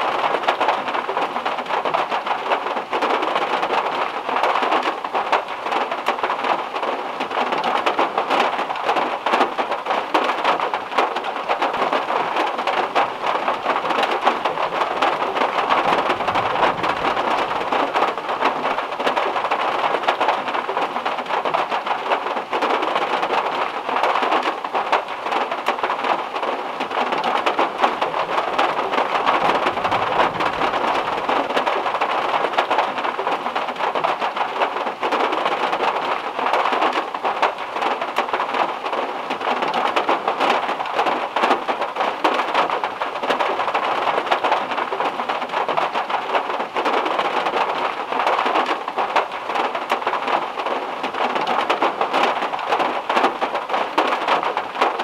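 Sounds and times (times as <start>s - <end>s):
heavy rain on a car roof: 0.0s - 55.0s
faint low rumble: 29.2s - 31.6s.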